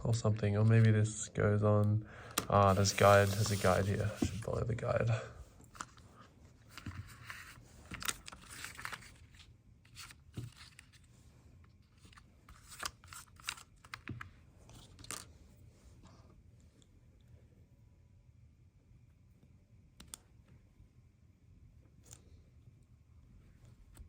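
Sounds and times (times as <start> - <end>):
paper packaging rustling: 2.5 - 4.6, 6.7 - 11.1.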